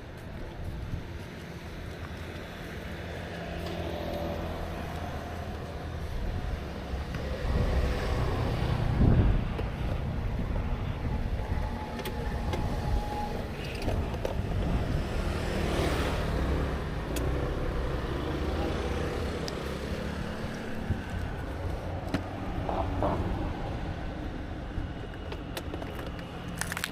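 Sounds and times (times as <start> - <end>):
road traffic rumble: 0.0 - 26.9
vehicle rushing past: 14.7 - 21.5.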